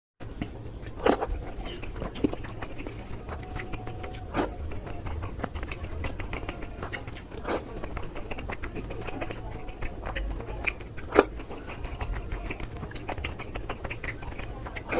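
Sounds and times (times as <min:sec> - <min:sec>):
steady low hum: 0:00.2 - 0:14.9
wet chewing and smacking: 0:00.2 - 0:14.9.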